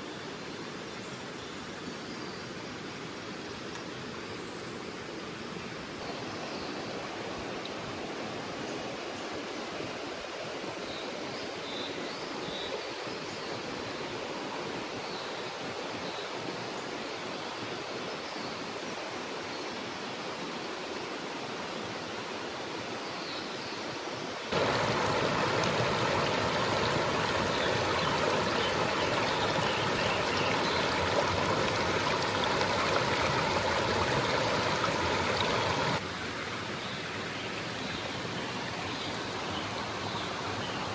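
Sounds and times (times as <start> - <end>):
river water rushing: 24.3 - 37.3.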